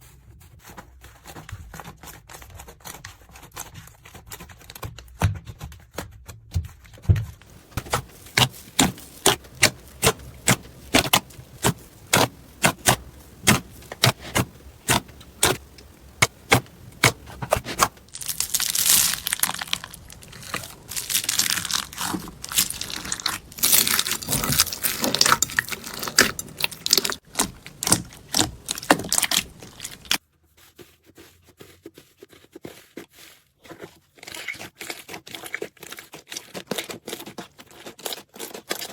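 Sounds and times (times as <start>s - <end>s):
slime clicking and popping: 7.7s - 30.2s.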